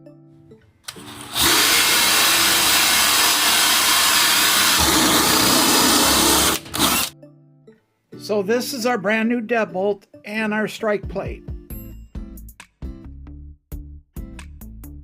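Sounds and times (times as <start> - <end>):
power drill boring through wood: 0.9 - 7.1.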